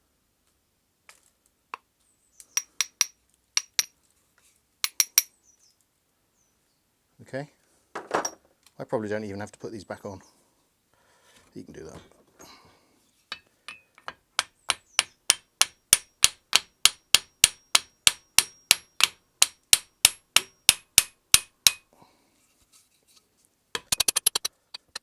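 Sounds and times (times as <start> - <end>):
fast burst of clicks: 23.8 - 25.0.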